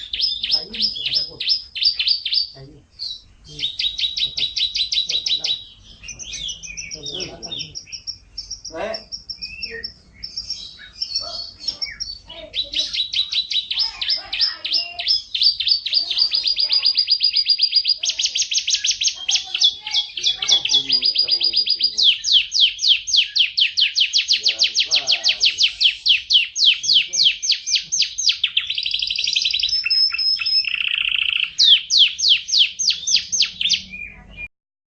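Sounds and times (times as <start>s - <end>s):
canary singing trills: 0.0s - 34.5s.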